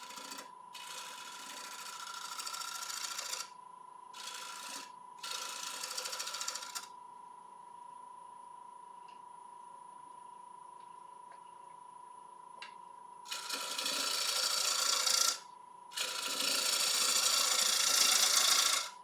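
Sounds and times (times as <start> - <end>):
gouge hissing on spinning wood: 16.1 - 18.8.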